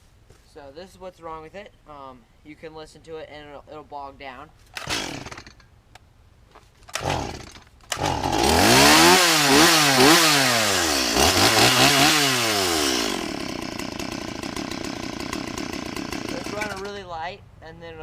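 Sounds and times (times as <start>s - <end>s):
chainsaw engine revving and idling: 4.8s - 5.6s, 6.9s - 17.0s.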